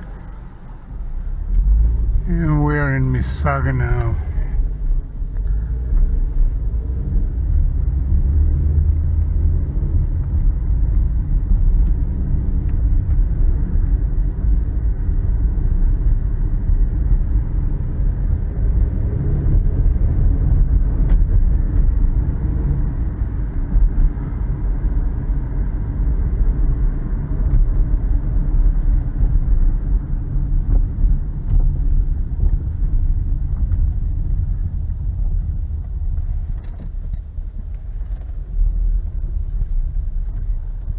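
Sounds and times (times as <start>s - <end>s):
car road and engine rumble: 0.0s - 40.9s.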